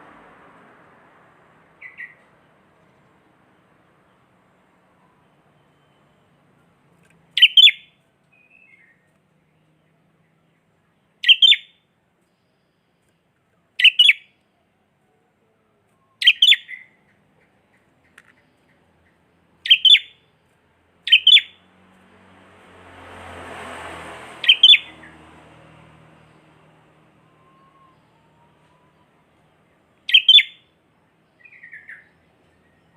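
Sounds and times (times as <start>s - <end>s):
bird double-noted calls: 1.8s - 2.3s, 7.4s - 8.9s, 11.2s - 11.8s, 13.8s - 14.3s, 16.2s - 20.2s, 21.0s - 21.6s, 24.4s - 24.9s, 30.1s - 30.6s, 31.4s - 32.1s.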